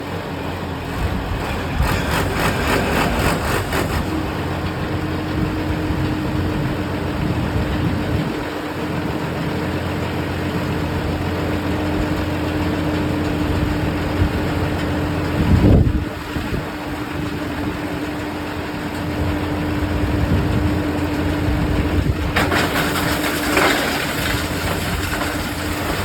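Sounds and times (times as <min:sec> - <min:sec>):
diesel engine running: 0:00.0 - 0:26.0
rapid rhythmic clatter: 0:01.4 - 0:04.2.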